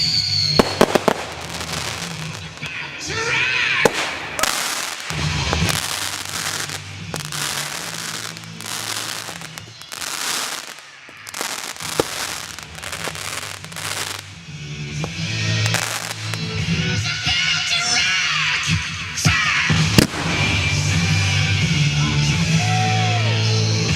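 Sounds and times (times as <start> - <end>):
fireworks sharp pops: 0.0 - 2.8, 3.8 - 14.3, 15.0 - 18.0, 20.0 - 21.0
fireworks crackling: 0.0 - 22.8
background music: 0.0 - 23.9.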